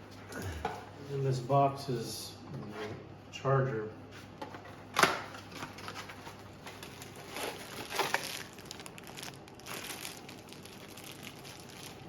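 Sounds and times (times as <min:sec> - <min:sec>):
packaging crinkling and rustling: 0:05.0 - 0:12.0.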